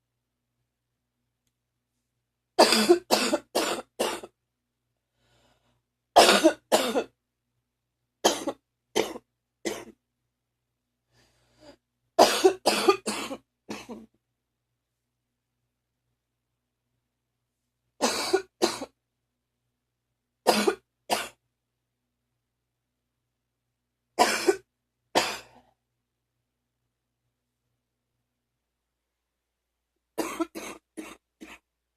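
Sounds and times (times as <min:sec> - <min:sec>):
person coughing phlegmy: 0:02.6 - 0:04.3, 0:06.2 - 0:07.2, 0:08.2 - 0:10.0, 0:12.2 - 0:14.1, 0:18.0 - 0:19.0, 0:20.5 - 0:21.4, 0:24.2 - 0:25.6, 0:30.2 - 0:31.6.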